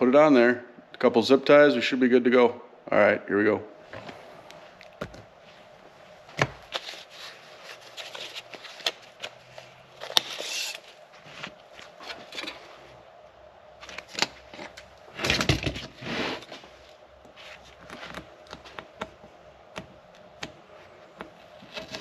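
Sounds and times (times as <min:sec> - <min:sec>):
scraping rustles: 0:06.6 - 0:13.0, 0:13.8 - 0:18.8.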